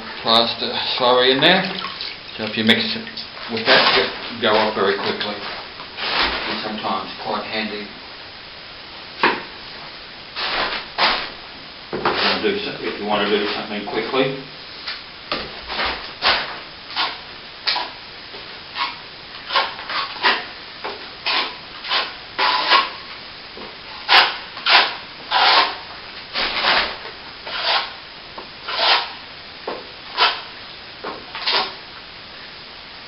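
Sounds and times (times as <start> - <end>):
trowel scraping cement on a wall: 15.7 - 17.9, 18.8 - 20.5, 21.2 - 23.0, 24.0 - 25.8, 26.4 - 28.0, 28.7 - 29.2, 30.1 - 30.5, 31.4 - 31.8.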